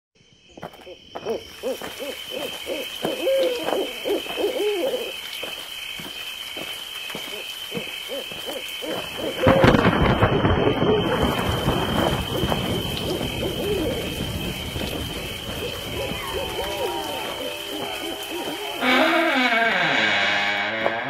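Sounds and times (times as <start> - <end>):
owl hooting: 0.8 - 5.5, 7.1 - 11.4, 12.3 - 14.2, 15.6 - 19.3.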